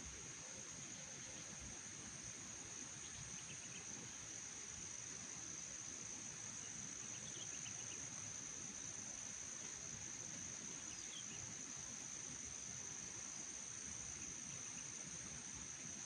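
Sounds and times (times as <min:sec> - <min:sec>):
faint chirps: 0:06.6 - 0:08.1.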